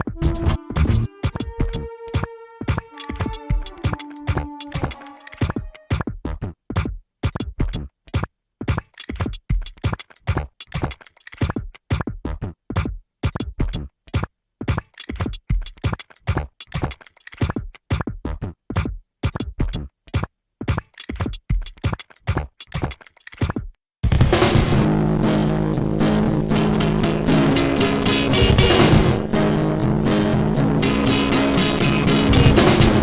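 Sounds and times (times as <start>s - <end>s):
chopped electronic sound fragments: 24.1s - 33.0s.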